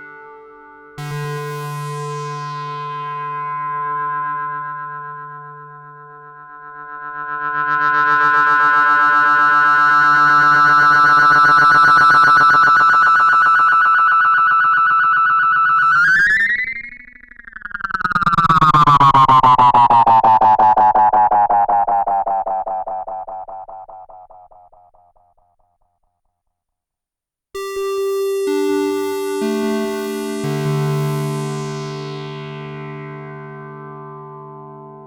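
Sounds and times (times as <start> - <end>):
synthesizer tone with rippling delay: 17.5 - 25.2.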